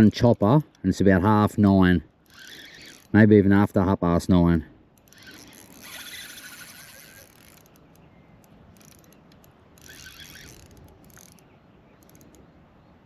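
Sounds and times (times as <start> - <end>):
fishing reel ratcheting: 2.2 - 3.2, 4.9 - 12.4
loose reel clicks: 4.9 - 12.5.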